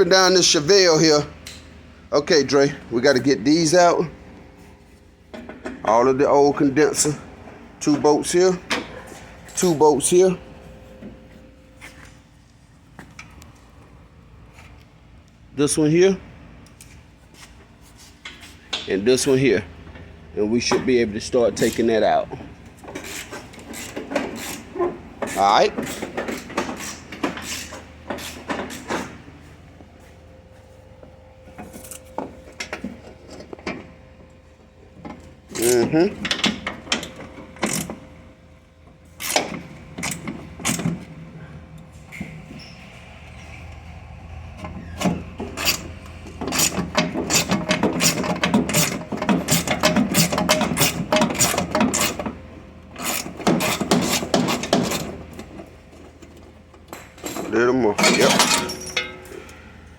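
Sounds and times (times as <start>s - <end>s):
metal tools clicking and clanking: 44.6s - 59.7s.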